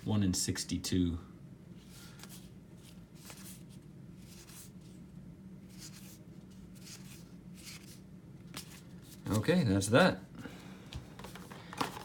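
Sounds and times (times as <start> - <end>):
low steady hum: 0.0 - 12.0
cards swishing: 1.8 - 5.0, 5.7 - 9.4.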